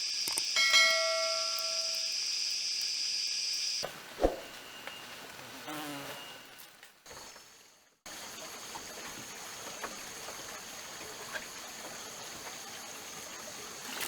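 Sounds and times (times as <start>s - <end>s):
insect chorus buzzing: 0.0s - 4.8s.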